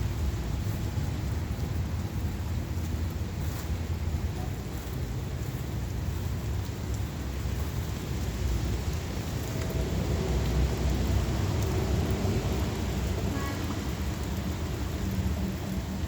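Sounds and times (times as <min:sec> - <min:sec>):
heavy rain falling: 0:00.0 - 0:16.0
thunder rumble: 0:08.4 - 0:16.0.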